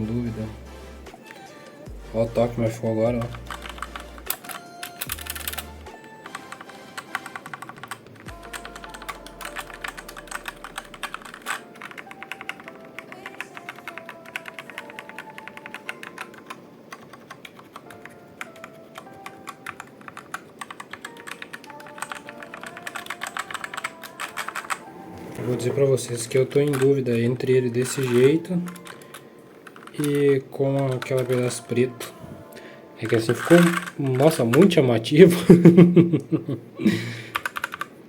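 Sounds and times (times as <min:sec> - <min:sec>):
background music: 0:00.0 - 0:38.0
mechanical keyboard typing: 0:03.2 - 0:24.9, 0:26.1 - 0:32.1, 0:33.0 - 0:34.9, 0:37.3 - 0:37.9.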